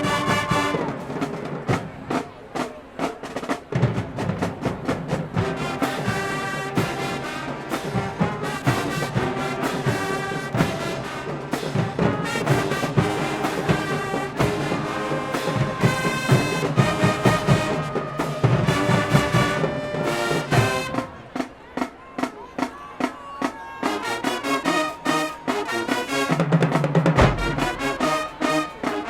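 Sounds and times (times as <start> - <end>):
brass chords: 0.0 - 1.4, 5.1 - 21.4, 23.8 - 29.0
drum hits: 26.4 - 28.9.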